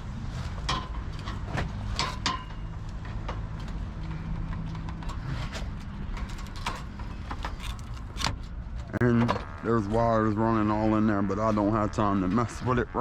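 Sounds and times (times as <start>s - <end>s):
scrap metal knocking and clanking: 4.8s - 8.5s.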